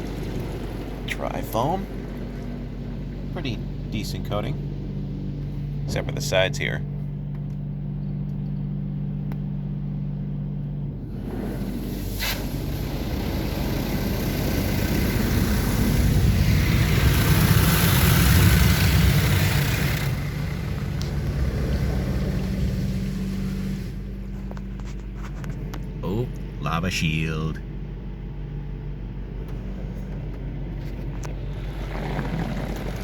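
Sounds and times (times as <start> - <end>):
car wash water spraying: 0.0 - 5.3, 11.0 - 24.8, 31.3 - 33.0
steady low hum: 0.0 - 33.0.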